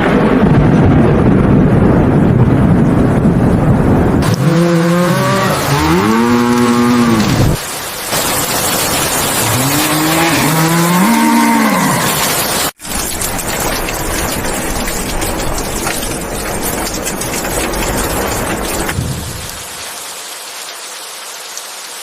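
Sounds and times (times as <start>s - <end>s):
steady rain: 0.0s - 22.0s
cattle mooing: 4.2s - 7.6s, 9.4s - 12.3s.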